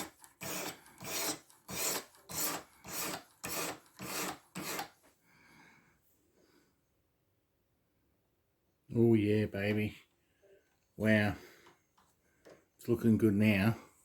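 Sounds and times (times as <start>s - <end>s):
sharpening stone rasping on knife: 0.4s - 4.9s.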